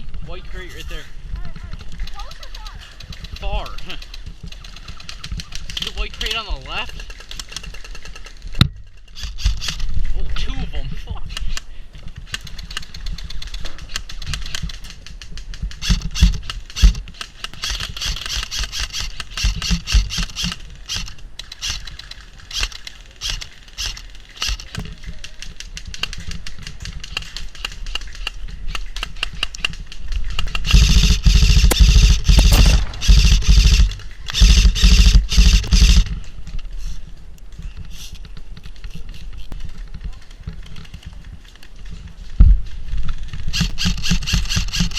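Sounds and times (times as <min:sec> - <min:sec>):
airsoft gunfire: 0:30.7 - 0:36.1.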